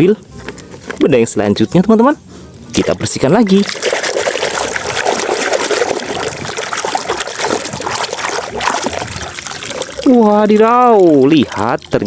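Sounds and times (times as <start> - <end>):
water splashing and trickling: 2.6 - 12.0.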